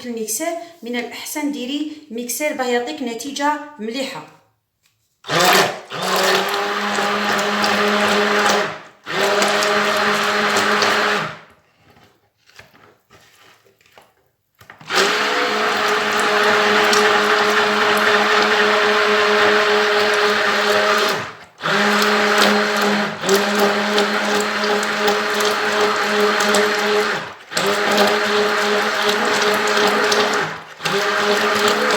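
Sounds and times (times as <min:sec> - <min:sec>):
electric mixer motor hum: 0:05.3 - 0:11.4, 0:14.8 - 0:31.9.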